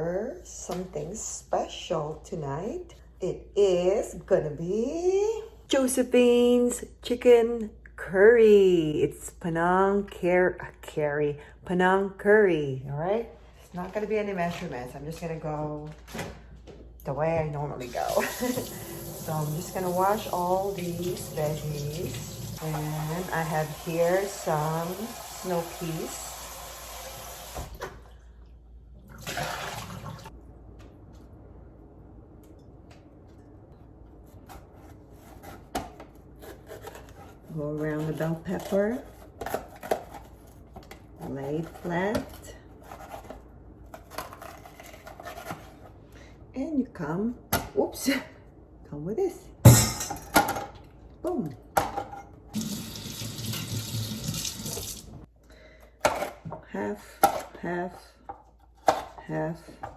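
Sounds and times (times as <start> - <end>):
kitchen tap running: 17.8 - 28.0, 29.0 - 30.3, 52.5 - 55.3.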